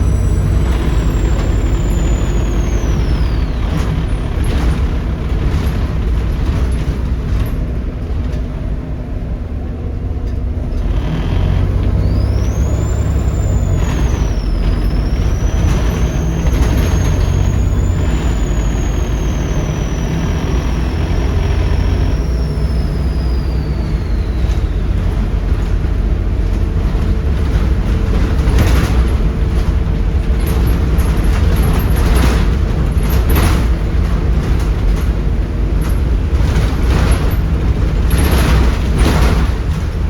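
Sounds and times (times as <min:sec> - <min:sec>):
turbo whistle: 0:00.0 - 0:04.4, 0:11.9 - 0:25.2
bus diesel engine rumble: 0:00.0 - 0:40.0.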